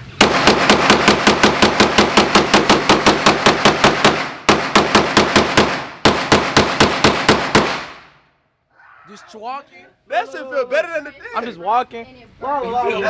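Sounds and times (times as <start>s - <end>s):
rapid gunfire: 0.1s - 8.2s.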